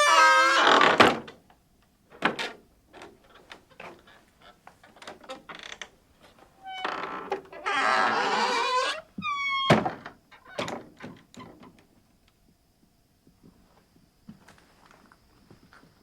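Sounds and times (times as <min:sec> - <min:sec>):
wooden door creaking on hinges: 0:00.0 - 0:01.4, 0:02.1 - 0:11.8.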